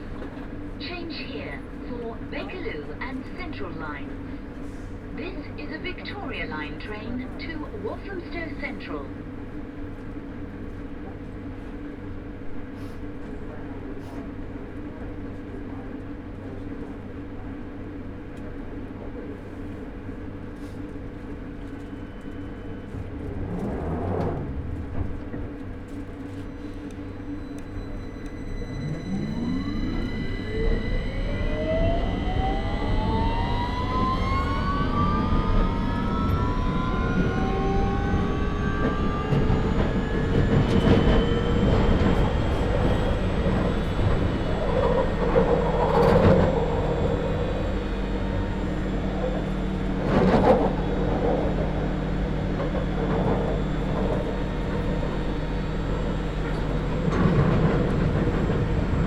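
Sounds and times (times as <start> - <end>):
train electrical hum: 0.0 - 59.0
traction motors whining: 21.6 - 59.0.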